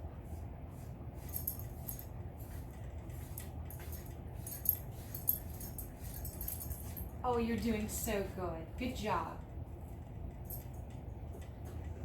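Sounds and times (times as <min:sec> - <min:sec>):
brush stroking dog's coat: 0:00.2 - 0:07.1.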